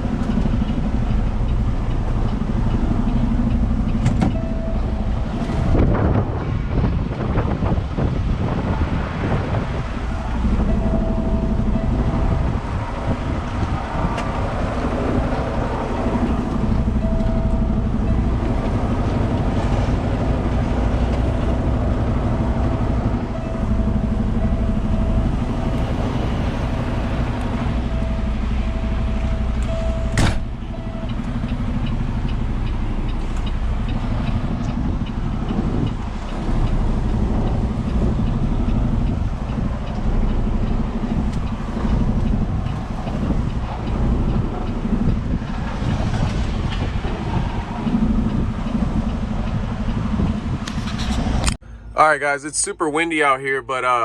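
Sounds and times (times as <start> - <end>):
diesel truck engine running: 0.0 - 54.0
sharp knock: 30.1 - 30.5.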